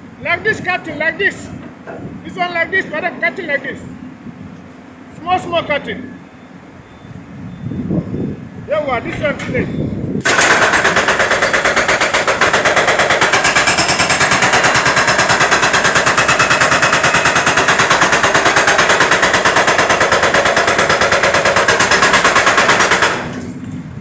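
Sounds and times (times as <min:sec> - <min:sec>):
jackhammer breaking concrete: 0:10.2 - 0:23.6.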